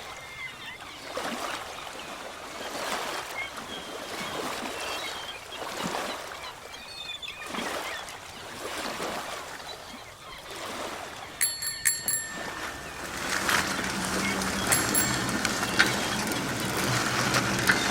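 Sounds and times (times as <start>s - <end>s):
small bell ringing: 11.4s - 17.9s.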